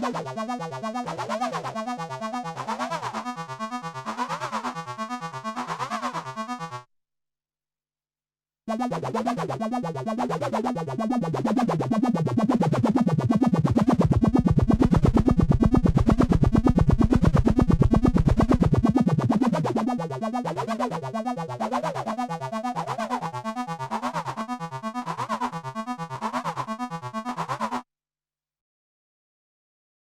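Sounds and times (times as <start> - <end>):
synthesizer sequence of short notes: 8.7 - 27.8.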